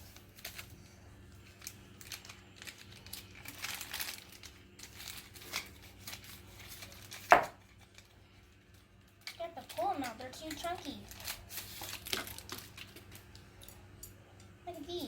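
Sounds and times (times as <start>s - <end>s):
packaging crinkling being torn open: 0.1s - 0.8s, 1.4s - 8.1s, 9.0s - 13.4s.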